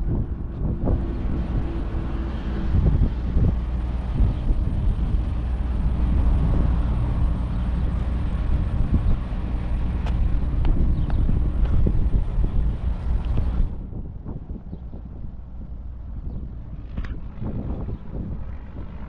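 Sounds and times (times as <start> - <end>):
truck engine and road rumble: 0.0 - 19.0.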